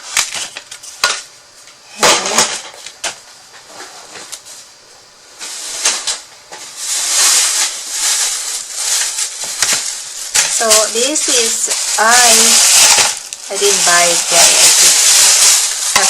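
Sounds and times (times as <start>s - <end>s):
rustling: 5.4s - 16.0s.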